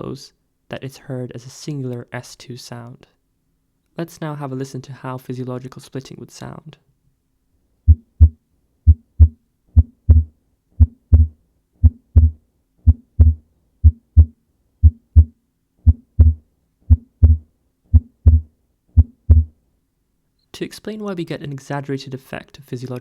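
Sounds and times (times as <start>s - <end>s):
heartbeat lub-dub: 7.9s - 19.6s.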